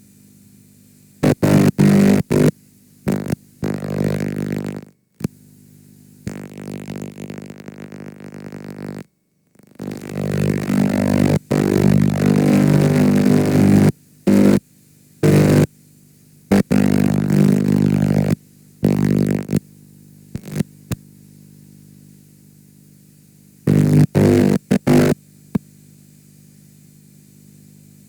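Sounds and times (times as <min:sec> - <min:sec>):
distorted tape playback buzzing: 0:01.2 - 0:14.6, 0:15.2 - 0:15.8, 0:16.5 - 0:21.1, 0:23.6 - 0:25.7.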